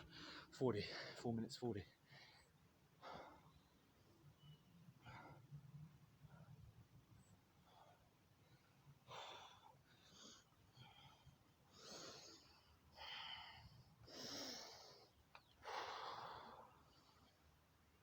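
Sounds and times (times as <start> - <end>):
man breathing hard: 0.0 - 1.3, 2.0 - 3.6, 7.6 - 17.5.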